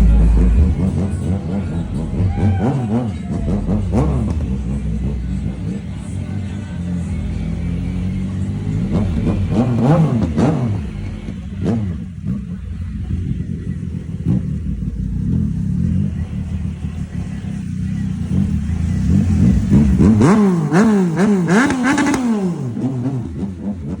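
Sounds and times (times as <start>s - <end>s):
motorcycle engine idling: 0.0s - 24.0s
motorcycle engine revving: 0.0s - 24.0s.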